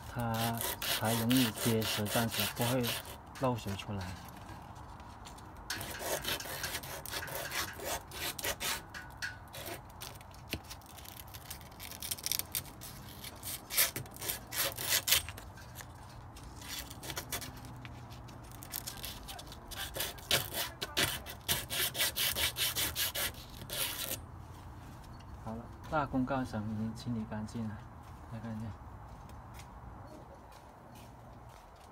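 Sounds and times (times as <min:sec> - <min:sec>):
sandpaper rasping on pipe: 0:00.0 - 0:03.2, 0:05.7 - 0:10.2, 0:11.0 - 0:15.4, 0:16.6 - 0:17.6, 0:18.7 - 0:24.2.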